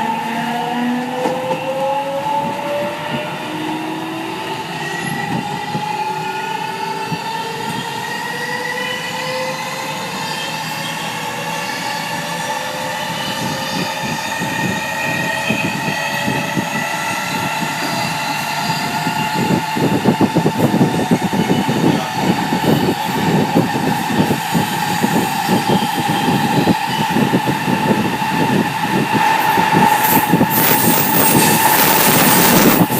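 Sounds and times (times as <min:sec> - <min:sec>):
wheels rumbling on rail: 0:10.2 - 0:32.9.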